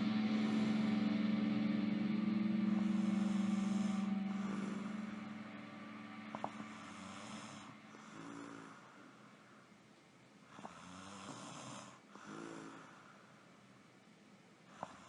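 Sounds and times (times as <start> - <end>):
sustained electric guitar note: 0.0 - 8.2
woman snoring faintly: 2.7 - 9.7, 10.4 - 13.5, 14.7 - 15.0.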